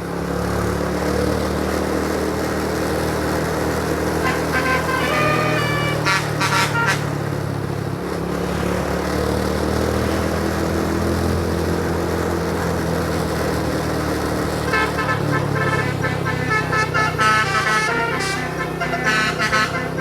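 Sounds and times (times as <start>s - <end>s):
bus engine droning: 0.0s - 20.0s
multi-tone air horn melody: 4.1s - 7.5s, 14.6s - 20.0s.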